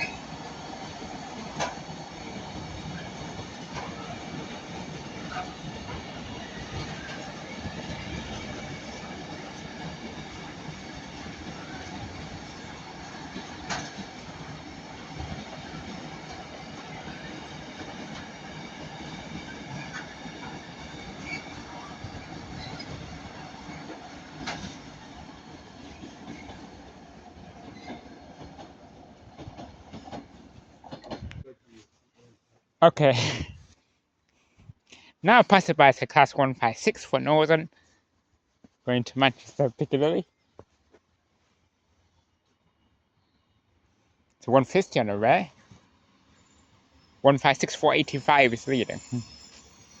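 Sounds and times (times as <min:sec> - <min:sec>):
train wheels rumbling on rail: 0:00.0 - 0:31.5
faint wheel squeal: 0:05.2 - 0:09.0, 0:20.8 - 0:23.1, 0:45.6 - 0:47.3, 0:48.1 - 0:50.0.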